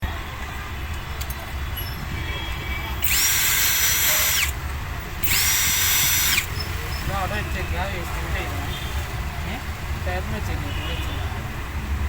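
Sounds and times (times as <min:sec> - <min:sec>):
electric drill motor whining: 0:03.0 - 0:04.6, 0:05.2 - 0:06.6.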